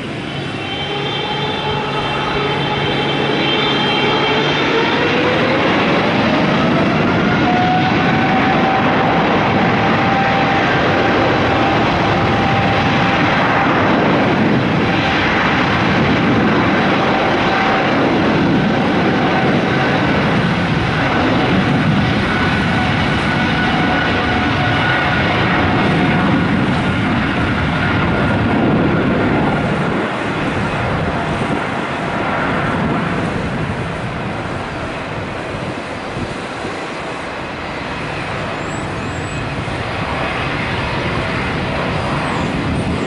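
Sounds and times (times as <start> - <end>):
jet engines at takeoff thrust: 0.0 - 43.0.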